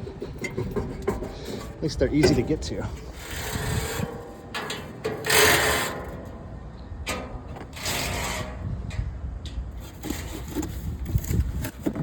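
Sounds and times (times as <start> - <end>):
metal parts scraping: 0.0 - 6.4, 7.5 - 9.0.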